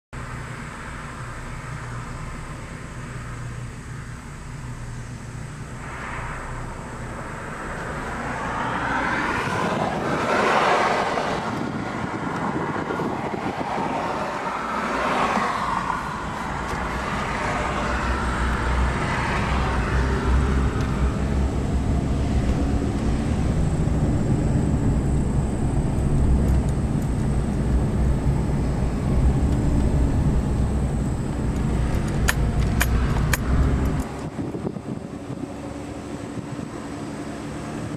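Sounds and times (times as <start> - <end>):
steady low rumble: 0.2 - 37.9
vehicles passing: 0.2 - 37.9.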